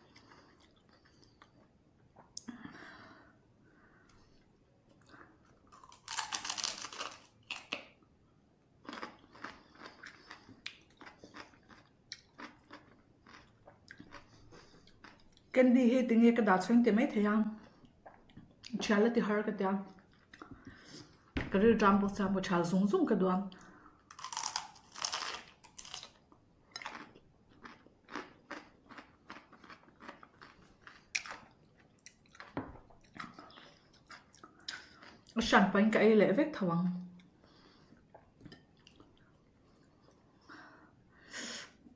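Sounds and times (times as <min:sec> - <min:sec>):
person chewing crunchy food: 0:00.0 - 0:02.4, 0:04.9 - 0:07.9, 0:08.8 - 0:15.5, 0:24.0 - 0:35.4
person biting crunchy cucumber: 0:24.1 - 0:26.1
wet chewing crunches: 0:24.1 - 0:26.2, 0:26.8 - 0:35.3.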